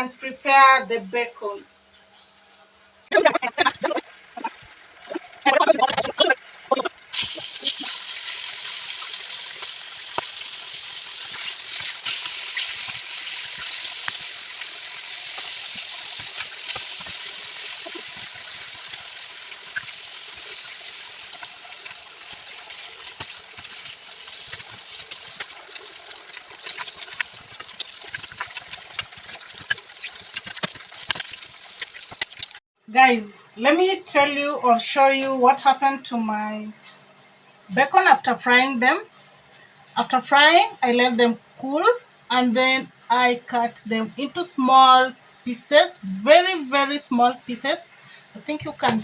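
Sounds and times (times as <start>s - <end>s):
bacon sizzling in a frying pan: 6.4s - 32.6s.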